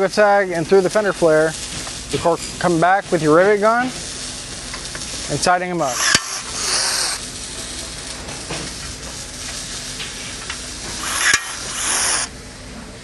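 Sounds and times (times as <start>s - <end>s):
rivet gun hissing: 4.2s - 12.3s.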